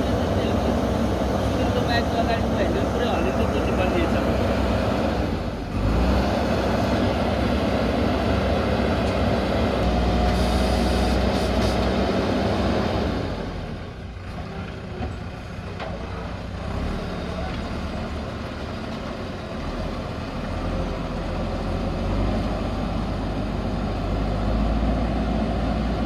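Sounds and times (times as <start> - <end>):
backhoe diesel engine running: 0.0 - 26.0.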